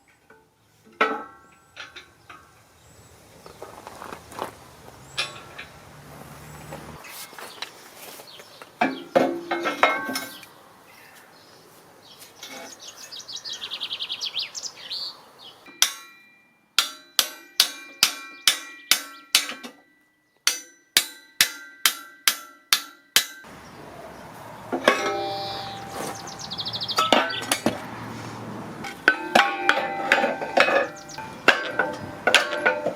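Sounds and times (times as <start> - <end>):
hammer striking steel: 15.7 - 19.8, 20.5 - 23.5, 24.7 - 26.2, 28.8 - 32.9.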